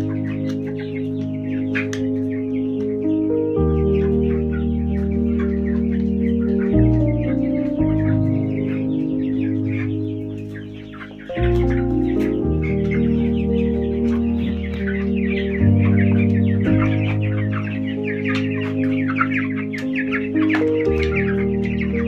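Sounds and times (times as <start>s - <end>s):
background music with bass: 0.0s - 22.0s
chickens clucking: 0.0s - 22.0s.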